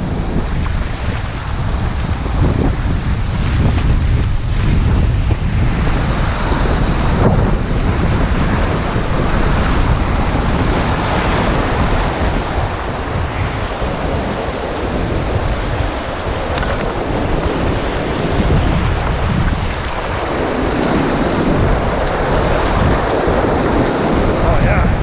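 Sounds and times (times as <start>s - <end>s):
wind on microphone: 0.0s - 25.0s
river rapid rushing: 6.2s - 25.0s.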